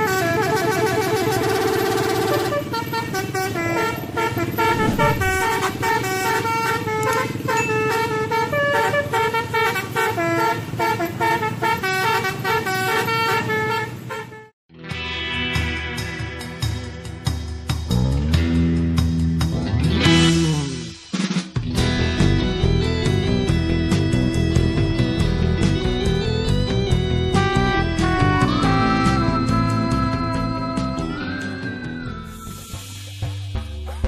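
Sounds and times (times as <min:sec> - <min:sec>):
multi-tone bus horn melody: 0:00.0 - 0:14.6, 0:24.7 - 0:31.6
band music with guitar and drums: 0:14.7 - 0:34.0.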